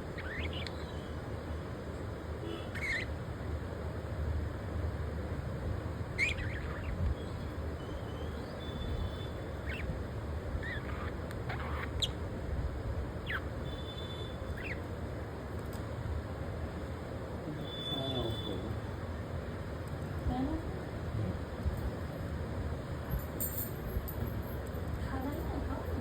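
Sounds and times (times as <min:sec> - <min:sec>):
budgies chirping and squawking: 0:00.2 - 0:00.8, 0:02.7 - 0:03.1, 0:06.2 - 0:12.2, 0:13.2 - 0:13.5, 0:14.4 - 0:14.9.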